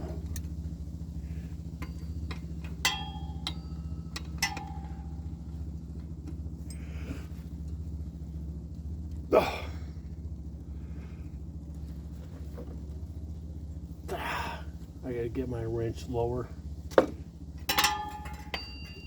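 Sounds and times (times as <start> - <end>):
steady low hum: 0.0 - 19.0
metal tool clinking on metal: 1.8 - 5.4, 17.6 - 19.0.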